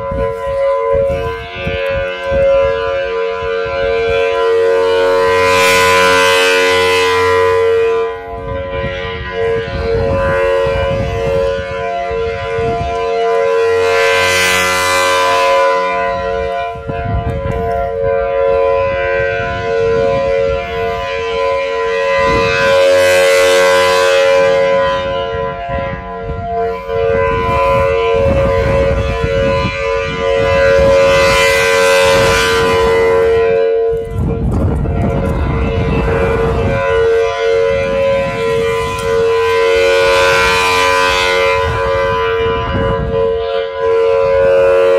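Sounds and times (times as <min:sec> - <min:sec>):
outdoor warning siren steady tone: 0:00.0 - 0:44.9.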